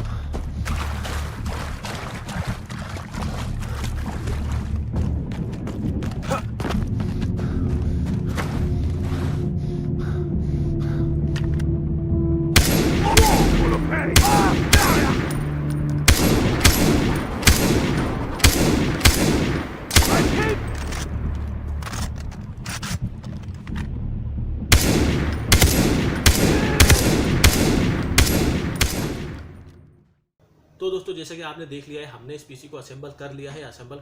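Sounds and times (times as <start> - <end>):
video game gunshots: 12.6 - 15.5, 16.1 - 20.8, 24.7 - 29.6
game voices: 12.9 - 15.4, 19.9 - 20.8, 26.4 - 27.2.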